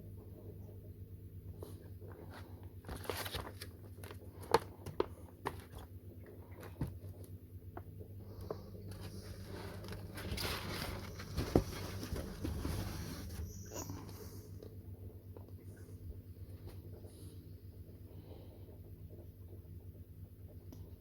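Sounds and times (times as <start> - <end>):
packaging rustling: 2.8 - 5.8, 8.9 - 13.6.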